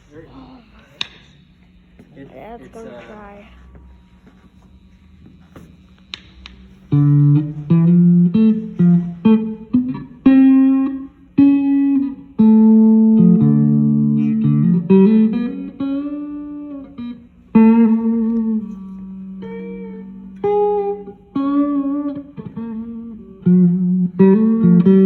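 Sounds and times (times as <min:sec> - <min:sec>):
guitar plucked notes and chords: 0:06.1 - 0:25.0.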